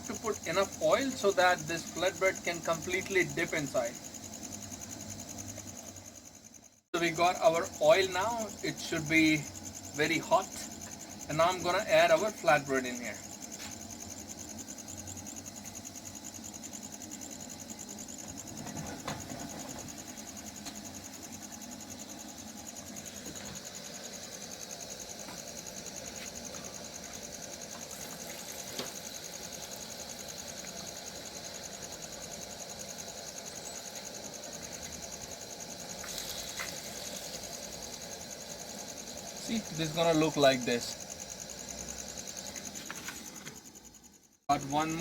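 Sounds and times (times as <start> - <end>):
insects chirring: 0.0 - 45.0
deep frying sizzle: 13.3 - 40.2.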